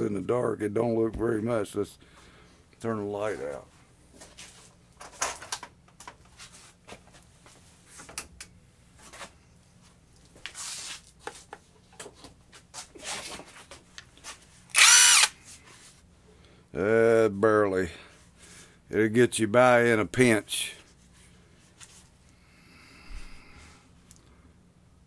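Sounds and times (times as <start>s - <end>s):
impact wrench motor whine: 14.7s - 15.4s.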